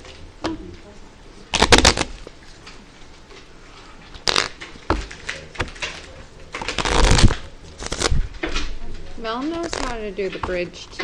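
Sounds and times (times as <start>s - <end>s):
playing cards riffle-shuffled: 1.6s - 2.3s, 4.2s - 6.0s, 6.6s - 8.4s, 9.5s - 10.6s.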